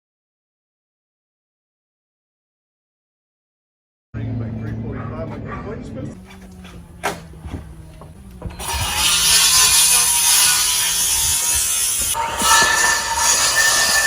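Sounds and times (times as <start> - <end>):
steady mechanical whine: 4.6 - 14.0
loud mechanical noise: 6.2 - 14.0.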